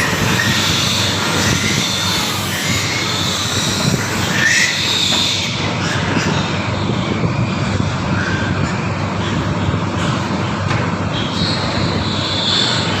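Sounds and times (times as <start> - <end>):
piglet squealing: 0.0 - 7.2, 11.2 - 13.0.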